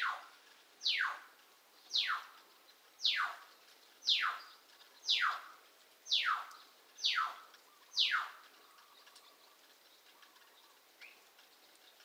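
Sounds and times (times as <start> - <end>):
pet bird calling: 4.1 - 4.4, 5.1 - 5.4, 6.1 - 8.4.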